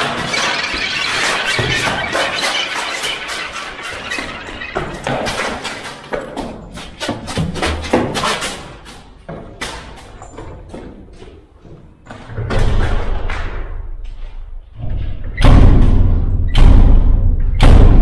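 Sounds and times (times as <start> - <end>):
deep booming impacts: 14.8 - 18.0.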